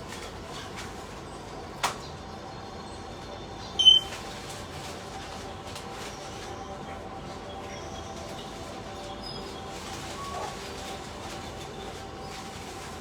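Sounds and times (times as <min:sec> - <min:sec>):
bird high-pitched call: 0:03.8 - 0:04.1.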